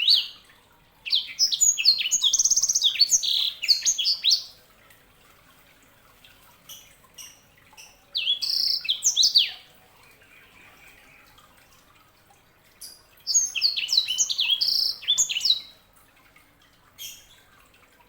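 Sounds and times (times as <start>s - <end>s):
canary singing: 8.1s - 9.7s, 12.8s - 15.7s.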